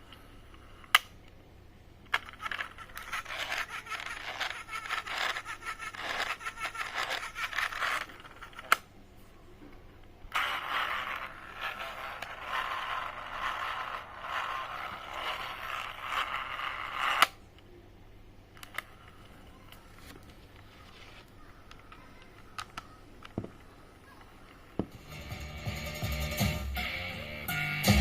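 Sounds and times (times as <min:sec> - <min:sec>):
tape mechanism whirring and scraping: 0:02.1 - 0:08.9, 0:10.3 - 0:17.4.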